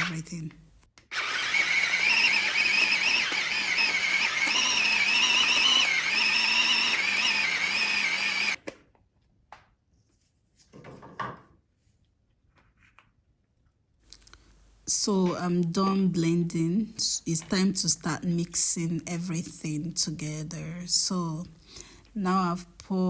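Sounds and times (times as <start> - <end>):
blender motor running: 0.0 - 0.2, 1.0 - 8.6.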